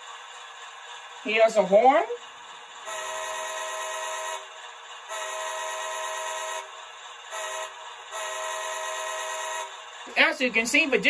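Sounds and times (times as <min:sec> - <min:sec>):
model train horn chord: 0:02.9 - 0:04.4, 0:05.1 - 0:06.7, 0:07.3 - 0:09.7.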